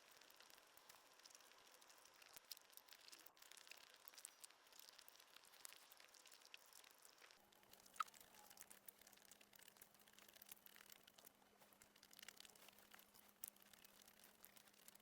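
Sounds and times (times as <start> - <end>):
chewing and handling food: 0.0 - 15.0.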